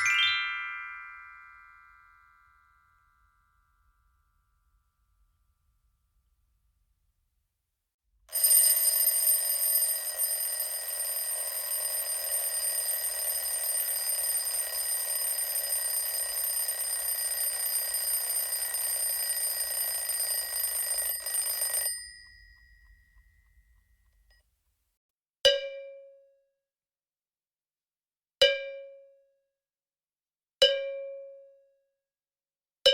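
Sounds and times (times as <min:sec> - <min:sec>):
mechanical clock bell ringing: 0:08.3 - 0:23.8.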